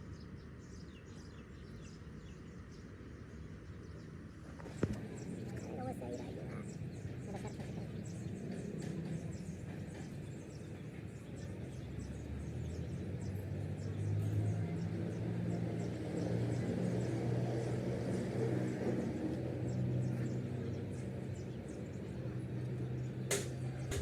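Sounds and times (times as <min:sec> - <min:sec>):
engine running with low hum: 0:00.6 - 0:24.0.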